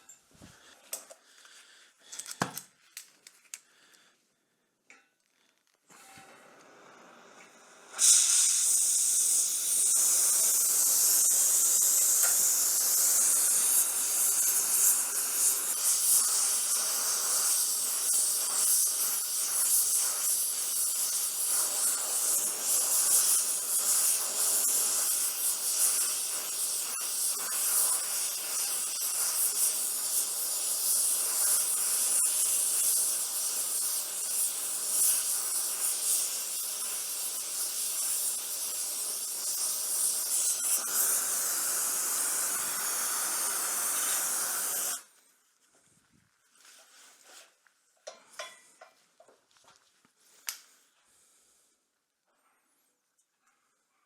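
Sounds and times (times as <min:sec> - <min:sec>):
gas torch hissing: 0:05.9 - 0:45.2.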